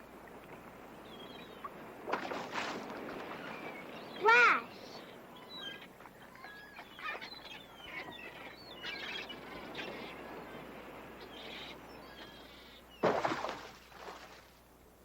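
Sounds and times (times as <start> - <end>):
birds chirping: 0.9 - 1.9, 3.1 - 13.2.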